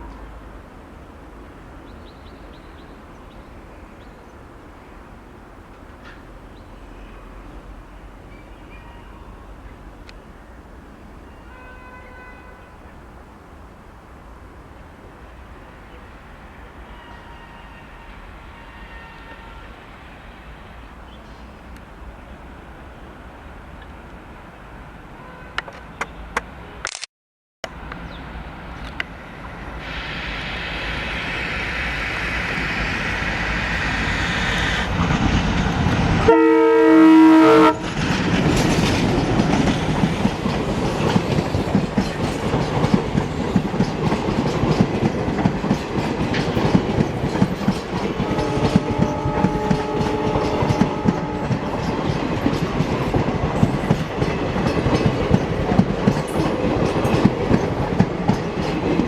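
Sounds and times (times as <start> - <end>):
train passing at speed: 0.0 - 26.8, 27.7 - 59.0
locomotive horn blast: 11.4 - 12.9, 16.8 - 19.8, 36.2 - 38.0, 48.2 - 51.7
wheels clattering over rail joints: 37.8 - 48.6.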